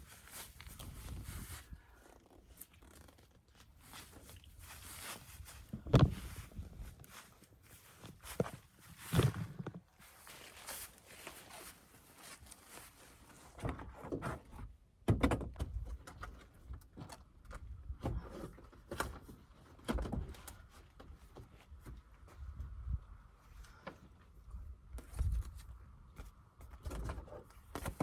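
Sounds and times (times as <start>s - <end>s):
knocks and thuds: 5.7s - 6.4s.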